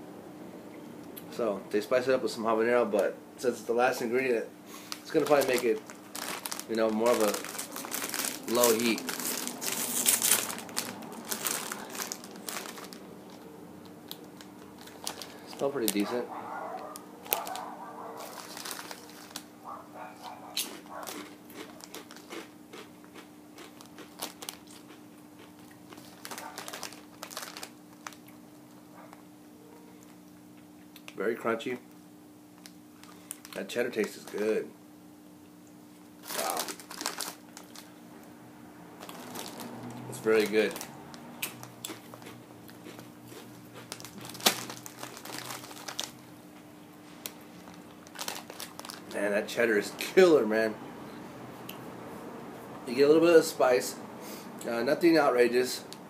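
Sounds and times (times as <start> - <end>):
chip bag crinkling: 3.9 - 29.2, 32.6 - 34.6, 36.2 - 38.0, 39.0 - 46.3, 47.0 - 50.3
potato chips crunching: 4.7 - 28.8, 36.2 - 38.0, 39.0 - 46.3, 47.1 - 49.3.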